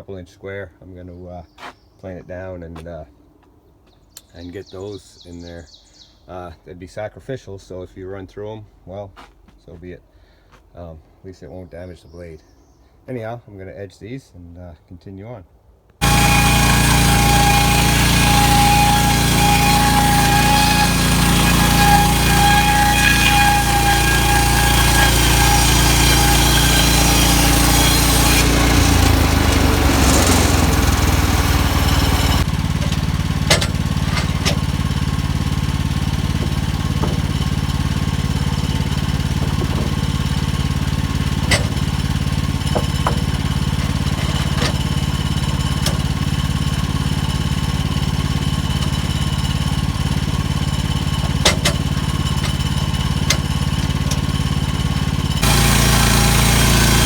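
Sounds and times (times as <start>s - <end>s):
gas engine running: 16.0s - 57.0s
saw blade cutting wood: 16.0s - 57.0s.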